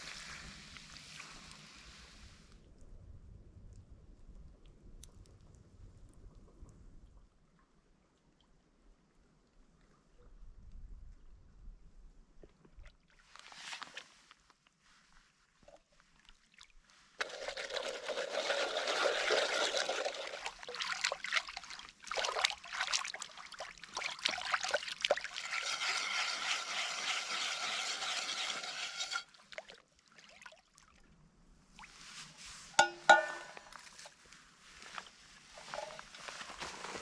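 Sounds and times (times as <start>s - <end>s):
water pouring in a stream: 0.0s - 2.4s, 16.5s - 31.0s.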